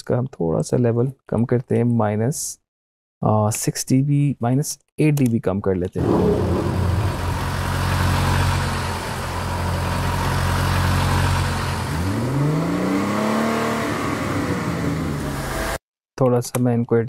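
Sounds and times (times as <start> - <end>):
car engine idling: 6.0 - 15.8
car engine revving: 6.0 - 15.8.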